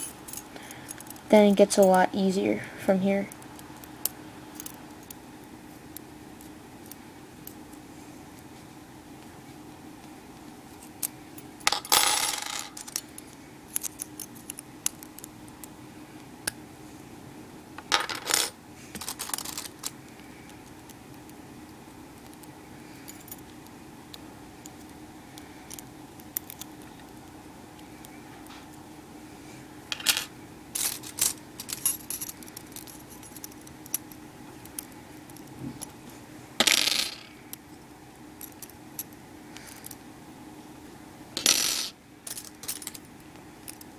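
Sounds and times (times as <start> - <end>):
faint steady hum: 0.0 - 43.9
metal puzzle pieces clinking: 17.9 - 19.9, 29.9 - 35.5.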